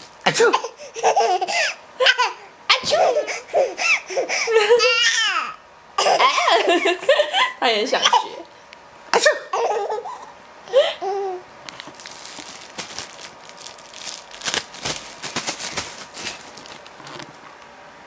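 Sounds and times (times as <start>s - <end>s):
small child laughing: 0.4s - 8.3s, 9.2s - 11.4s.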